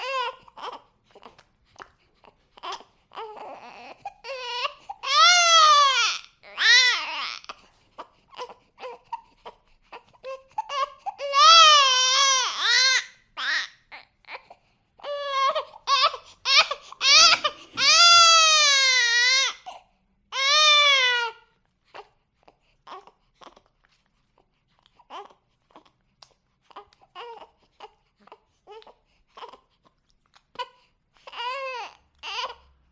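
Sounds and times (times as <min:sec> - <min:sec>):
baby crying: 0:00.0 - 0:01.3, 0:02.6 - 0:07.6, 0:08.3 - 0:22.1, 0:26.7 - 0:29.7, 0:30.5 - 0:32.7.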